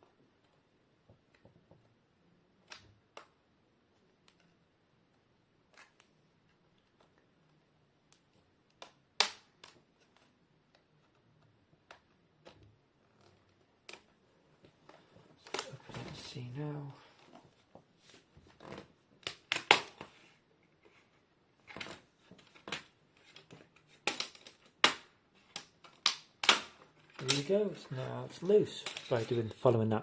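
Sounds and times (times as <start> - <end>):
plastic clips clicking and snapping: 13.2 - 14.1, 19.2 - 20.0, 21.7 - 27.6.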